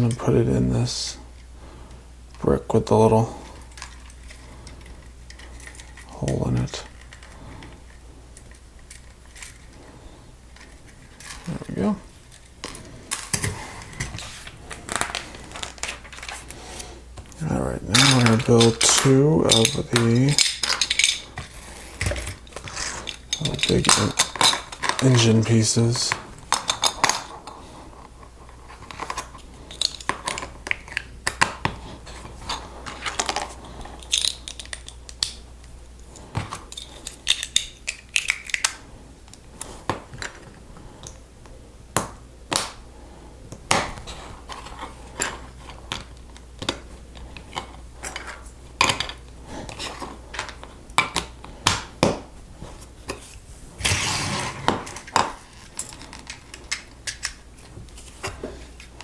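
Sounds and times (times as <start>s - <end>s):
plastic bricks clicking and clattering: 17.9s - 25.2s, 36.4s - 38.8s.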